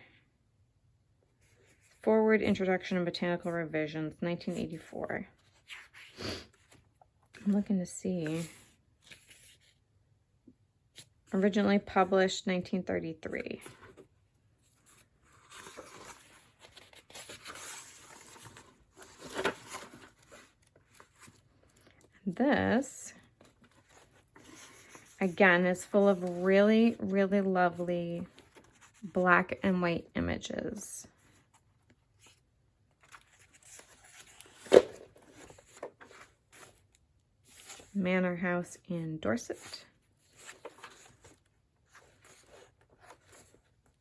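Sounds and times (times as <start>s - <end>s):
book pages rustling: 8.2s - 9.8s, 13.3s - 22.3s, 23.2s - 29.7s, 31.2s - 38.0s, 39.5s - 44.0s.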